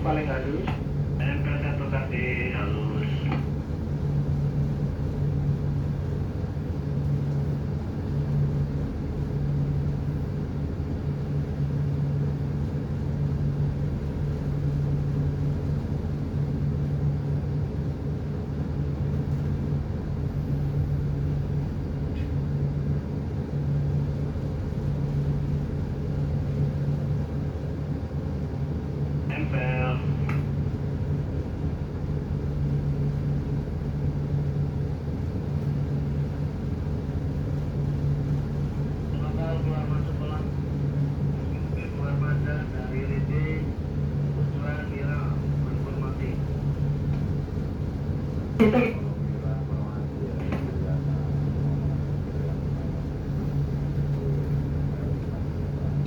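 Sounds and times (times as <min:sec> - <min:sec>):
diesel engine droning: 0:00.0 - 0:03.4.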